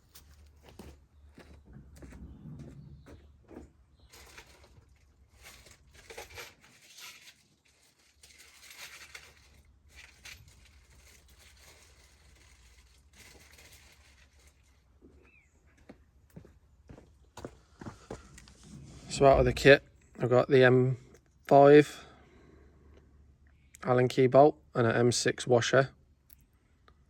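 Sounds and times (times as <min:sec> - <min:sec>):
packaging rustling and crinkling: 0:04.0 - 0:15.0.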